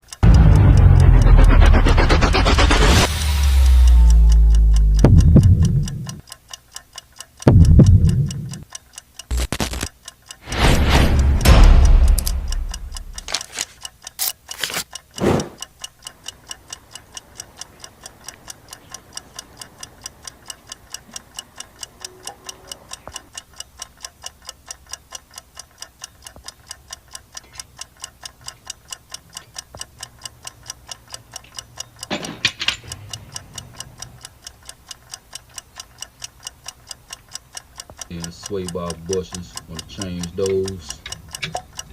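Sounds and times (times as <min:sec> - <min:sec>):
steady mechanical ticking: 0:00.0 - 0:41.9
thump with low rumble: 0:00.2 - 0:06.1, 0:07.5 - 0:08.3, 0:10.6 - 0:13.3.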